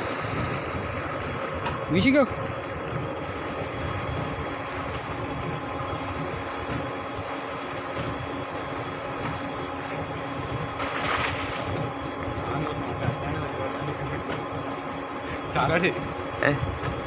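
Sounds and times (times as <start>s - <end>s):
rushing splash: 0.0s - 1.5s, 10.7s - 11.8s
motor humming: 0.0s - 17.0s.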